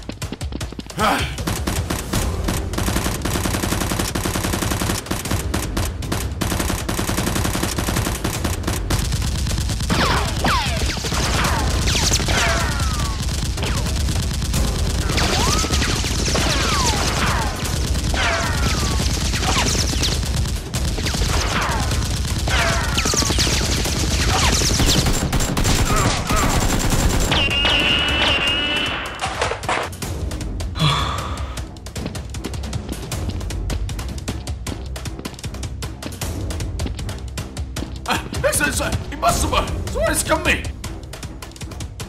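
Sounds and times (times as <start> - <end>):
rapid automatic gunfire: 1.4 - 29.2.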